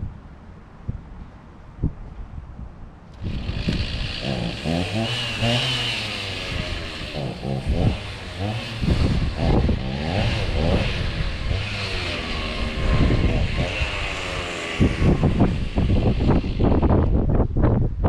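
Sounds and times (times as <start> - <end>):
chainsaw engine revving: 3.1 - 17.2.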